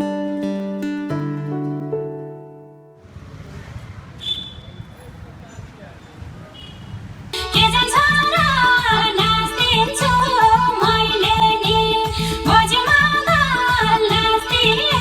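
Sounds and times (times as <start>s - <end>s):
sliding melody line: 7.4s - 15.0s
song with drum beat: 7.4s - 15.0s.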